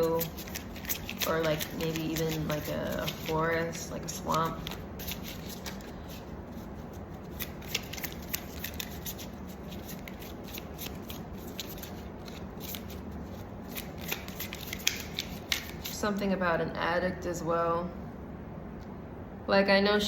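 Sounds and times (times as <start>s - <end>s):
cards clicking and sliding: 0.0s - 6.6s, 7.3s - 16.0s
steady low hum: 0.0s - 20.0s.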